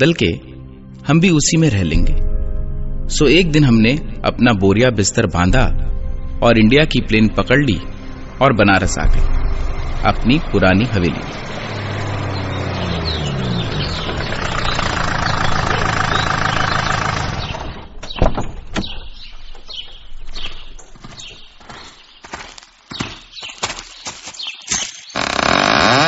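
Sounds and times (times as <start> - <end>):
steady rumbling noise: 2.3 - 18.6
loud rising creaking sound: 9.3 - 17.9, 25.1 - 26.0.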